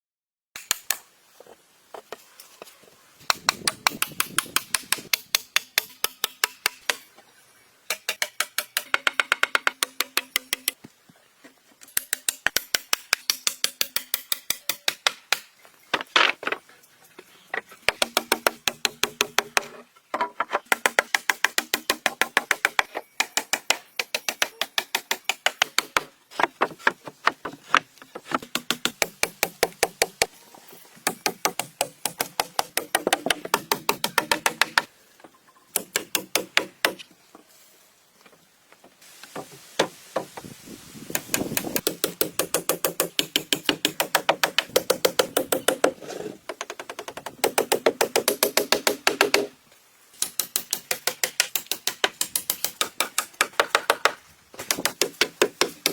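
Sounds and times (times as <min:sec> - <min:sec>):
steady hiss: 0:38.9 - 0:41.8.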